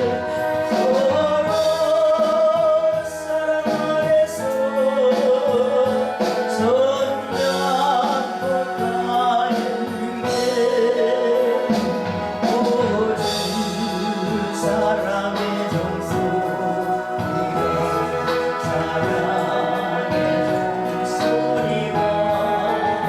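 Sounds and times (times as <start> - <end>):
instrumental accompaniment: 0.0 - 23.0
woman singing a hymn: 3.7 - 23.0.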